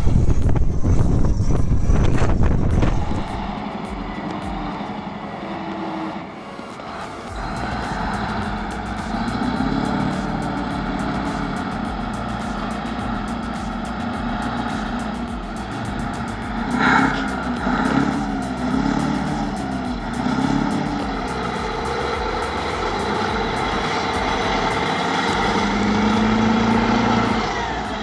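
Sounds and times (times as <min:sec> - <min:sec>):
diesel machine engine running: 0:07.0 - 0:28.0.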